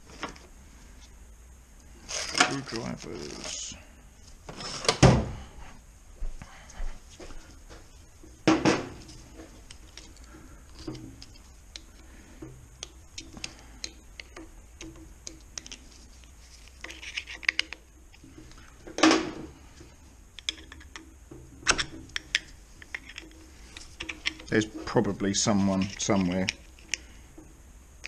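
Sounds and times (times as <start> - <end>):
metallic clicks and scrapes: 12.8 - 18.7, 21.7 - 27.2.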